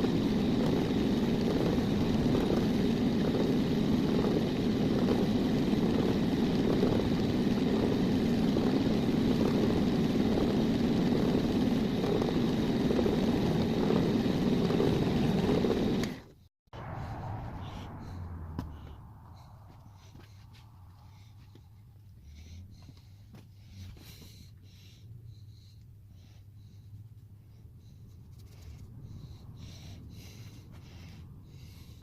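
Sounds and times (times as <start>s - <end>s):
power tool motor running: 0.0s - 16.3s.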